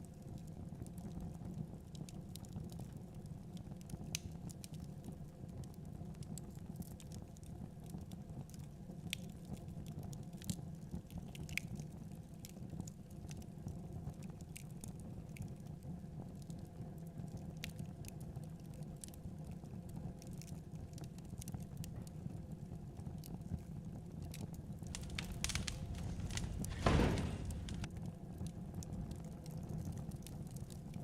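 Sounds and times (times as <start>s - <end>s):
wood fire crackling: 24.2s - 27.9s.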